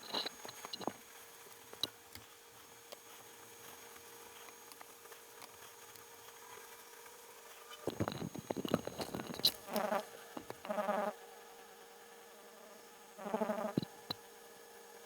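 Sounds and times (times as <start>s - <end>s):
rapid plastic clicking: 2.9s - 6.8s.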